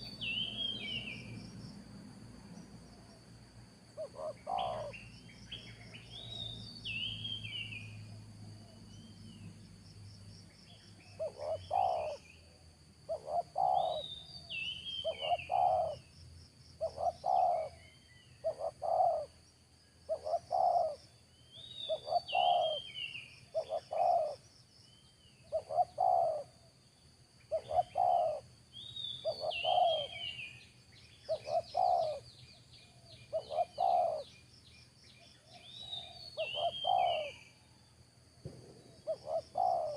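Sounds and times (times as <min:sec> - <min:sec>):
small birds chirping: 0:00.0 - 0:01.8, 0:04.0 - 0:39.9
steady insect whine: 0:00.0 - 0:39.9
dove cooing: 0:04.0 - 0:05.0, 0:11.1 - 0:12.2, 0:13.1 - 0:14.1, 0:15.0 - 0:16.1, 0:16.8 - 0:17.8, 0:18.4 - 0:19.4, 0:20.1 - 0:21.0, 0:21.8 - 0:24.4, 0:25.5 - 0:26.6, 0:27.5 - 0:28.5, 0:29.2 - 0:30.5, 0:31.3 - 0:32.3, 0:33.3 - 0:34.3, 0:35.5 - 0:37.5, 0:38.7 - 0:39.9.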